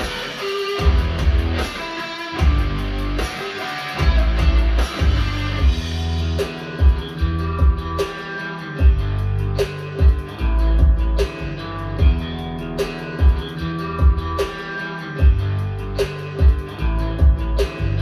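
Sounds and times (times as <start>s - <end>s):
sharp drum hits: 0.0s - 11.4s
strummed and picked guitar: 0.0s - 18.0s
deep bass notes: 0.8s - 1.7s, 2.4s - 3.3s, 4.0s - 8.1s, 8.8s - 14.6s, 15.2s - 18.0s.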